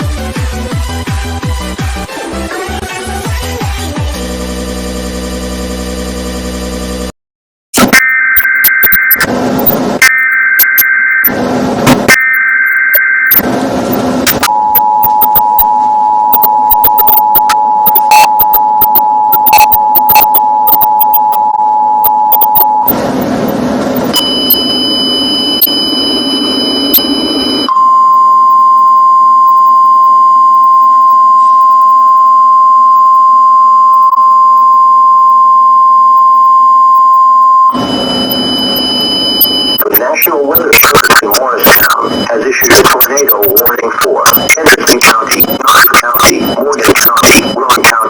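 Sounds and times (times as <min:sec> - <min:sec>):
radio static: 0:07.8 - 0:14.5, 0:16.7 - 0:21.1, 0:39.8 - 0:48.0
two-tone alert signal: 0:14.3 - 0:23.0, 0:24.1 - 0:48.0.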